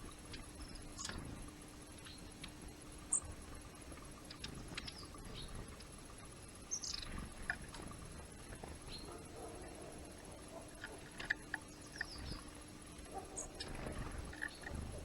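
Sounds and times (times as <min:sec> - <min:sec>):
small birds chirping: 0:00.0 - 0:15.0
faint ticks and taps: 0:02.0 - 0:06.3, 0:07.3 - 0:07.9, 0:10.5 - 0:12.5.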